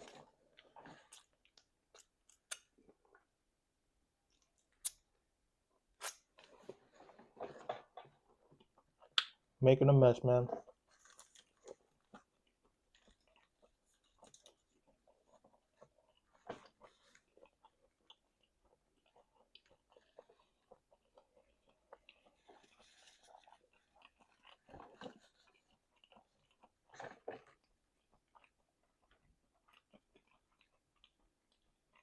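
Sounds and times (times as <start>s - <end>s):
person chewing food: 0.0s - 3.3s, 5.9s - 9.5s, 10.5s - 32.0s.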